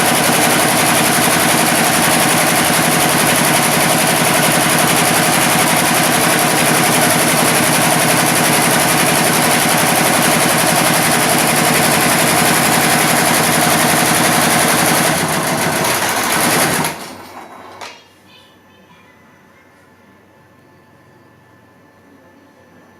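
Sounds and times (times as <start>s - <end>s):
embroidery machine stitching: 0.0s - 17.8s.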